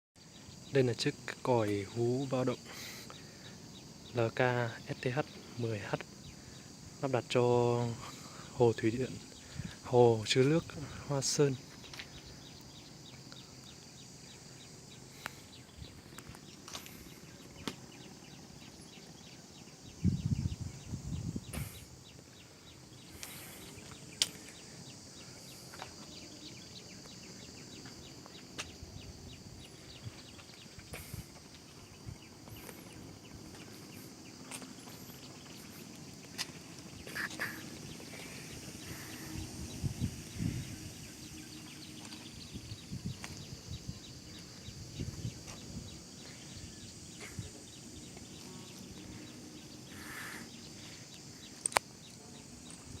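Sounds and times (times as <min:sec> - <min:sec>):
insects droning: 0:00.2 - 0:53.0
faint high ticks: 0:51.5 - 0:52.8.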